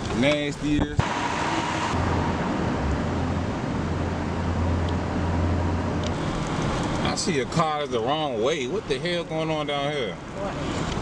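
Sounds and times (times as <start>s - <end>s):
road noise on snow: 0.0s - 11.0s
low engine hum: 0.8s - 8.0s.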